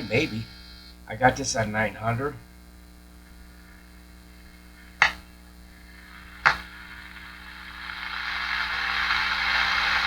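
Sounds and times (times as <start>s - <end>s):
faint mains hum: 0.0s - 10.0s
radio static hiss: 0.0s - 10.0s
sharp click: 5.0s - 5.3s.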